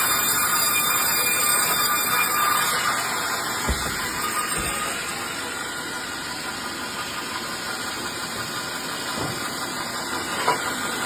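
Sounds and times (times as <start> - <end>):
machine motor running: 3.0 - 9.6
light knocks: 3.6 - 5.1.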